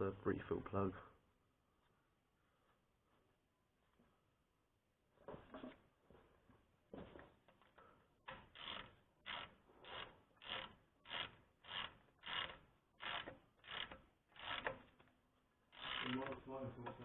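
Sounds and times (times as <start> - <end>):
hand ratchet clicking: 8.3 - 15.1, 15.7 - 16.5.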